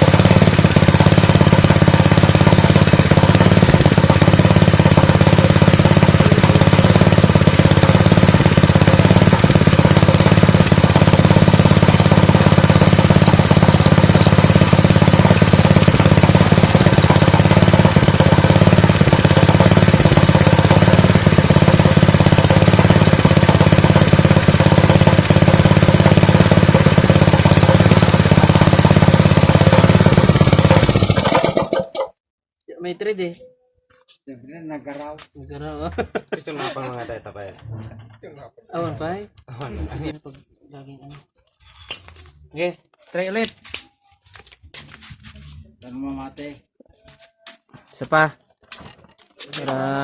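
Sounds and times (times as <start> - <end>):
petrol engine running: 0.0 - 31.8.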